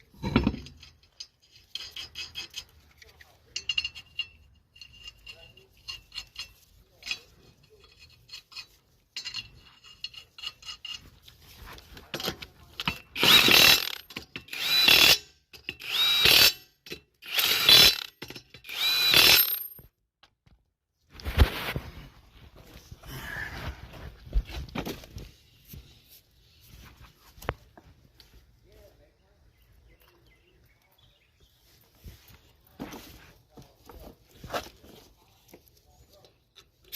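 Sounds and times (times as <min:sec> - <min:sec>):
light metallic clicks and rattles: 0:00.1 - 0:13.2
impact wrench bursts with whine: 0:13.2 - 0:19.7.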